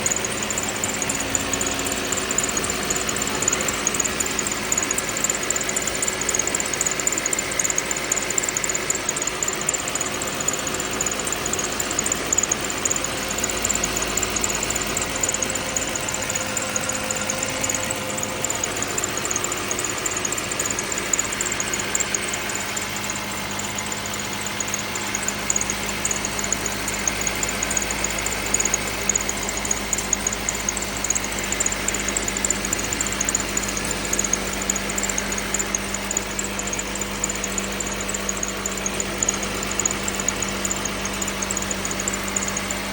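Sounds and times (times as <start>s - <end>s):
car engine idling: 0.0s - 42.9s
engine rattle and creak: 0.0s - 42.9s.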